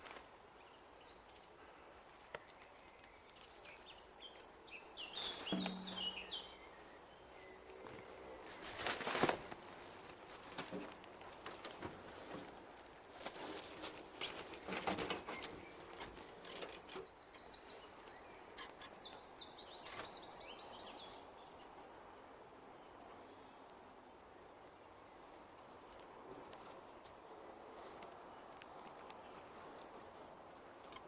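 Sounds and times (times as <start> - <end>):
songbird trilling: 4.7 - 7.6
crackles and knocks: 5.3 - 6.2, 8.9 - 17.0.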